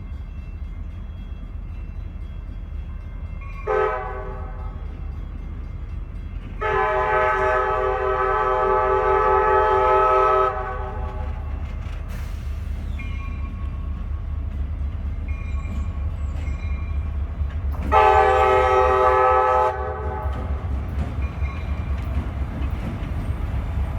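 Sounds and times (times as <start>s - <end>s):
passing train rumble: 0.0s - 23.9s
locomotive air horn blasts: 3.6s - 4.8s, 6.6s - 11.3s, 17.8s - 20.6s.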